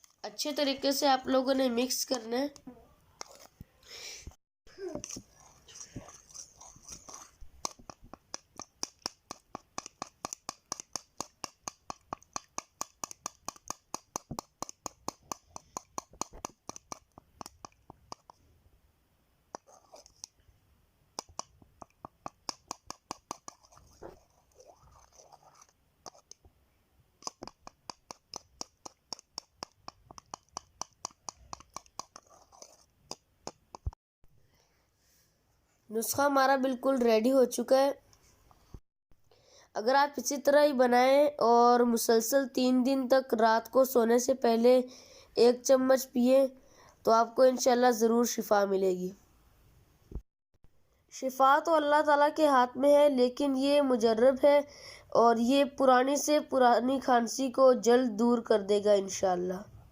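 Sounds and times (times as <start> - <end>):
spoon clicking against container: 7.0 - 18.3.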